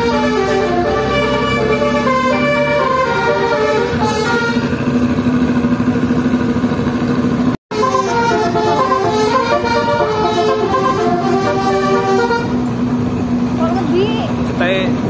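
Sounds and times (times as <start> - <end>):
musical air horn melody: 0.0 - 5.0, 7.7 - 12.7
engine droning: 0.0 - 15.0.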